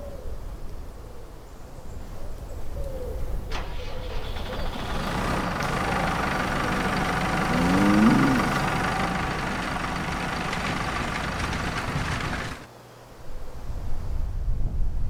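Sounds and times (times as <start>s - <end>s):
engine running steadily: 3.6s - 12.7s.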